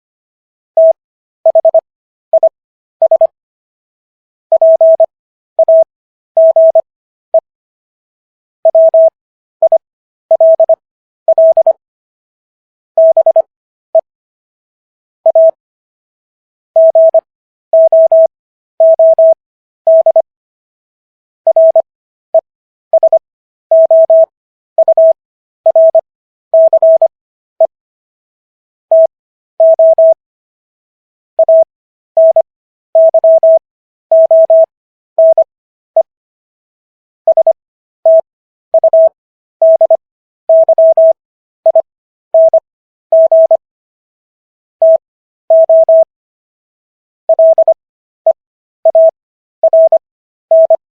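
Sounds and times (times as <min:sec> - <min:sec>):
morse code beeps: 0:00.8 - 0:03.4, 0:04.5 - 0:06.9, 0:08.7 - 0:11.8, 0:13.0 - 0:14.1, 0:15.3 - 0:15.6, 0:16.8 - 0:20.3, 0:21.5 - 0:21.9, 0:23.0 - 0:26.0, 0:26.6 - 0:27.8, 0:28.9 - 0:30.2, 0:31.4 - 0:36.1, 0:37.3 - 0:43.6, 0:44.8 - 0:46.1, 0:47.3 - 0:50.8.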